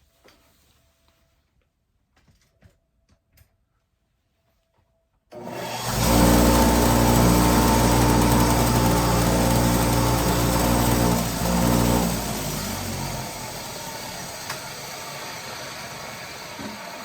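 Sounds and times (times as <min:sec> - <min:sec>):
power tool wire brush humming: 0:05.4 - 0:17.0.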